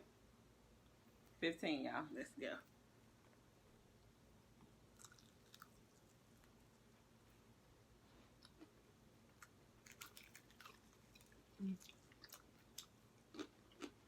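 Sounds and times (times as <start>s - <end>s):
wet chewing and lip smacks: 5.0s - 6.6s.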